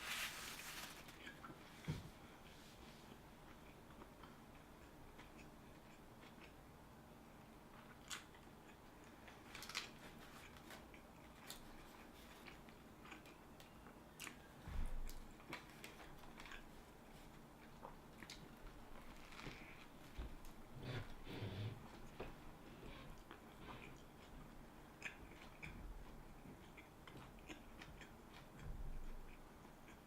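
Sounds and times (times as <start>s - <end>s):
person chewing food: 3.1s - 6.6s, 7.7s - 20.0s, 23.1s - 30.0s
crackles: 9.0s - 10.8s.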